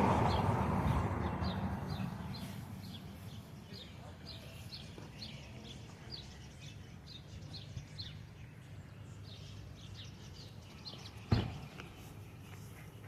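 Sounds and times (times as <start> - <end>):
small birds chirping: 0.2 - 13.0
sharp thump: 11.3 - 11.7.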